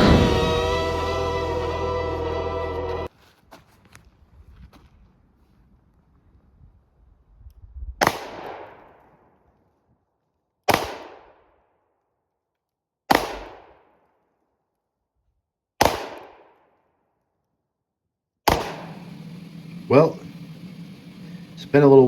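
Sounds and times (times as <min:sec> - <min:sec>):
pistol shots: 0:08.0 - 0:08.9, 0:10.7 - 0:11.4, 0:13.1 - 0:13.8, 0:15.8 - 0:16.6, 0:18.5 - 0:18.8.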